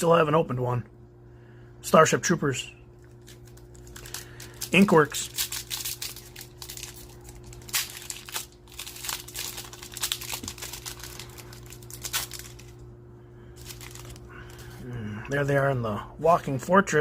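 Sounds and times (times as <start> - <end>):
wrapper tearing and crinkling: 3.1 - 12.8, 13.6 - 14.8.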